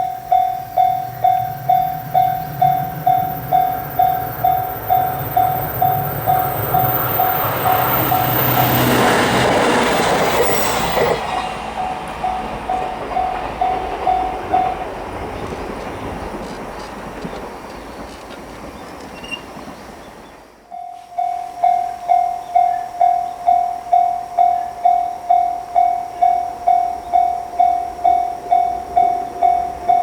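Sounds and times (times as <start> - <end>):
level-crossing alarm bell ringing: 0.0 - 15.2, 20.7 - 30.0
electric train passing: 0.0 - 30.0.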